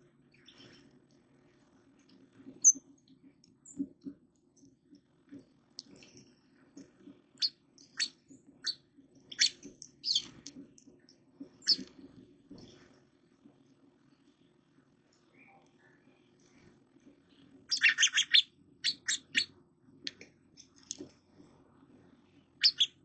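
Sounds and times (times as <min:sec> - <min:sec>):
small birds chirping: 0:00.2 - 0:00.9, 0:02.6 - 0:02.8, 0:07.1 - 0:13.0, 0:15.1 - 0:19.6, 0:22.6 - 0:23.0.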